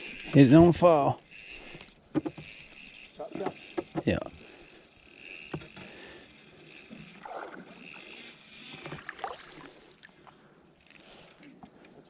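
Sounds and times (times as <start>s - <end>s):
faint water: 0.0s - 12.0s.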